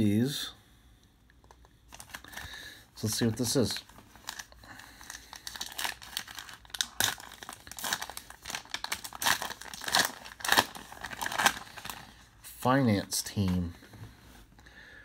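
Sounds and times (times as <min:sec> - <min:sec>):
wrapper tearing and crinkling: 0:03.1 - 0:12.2.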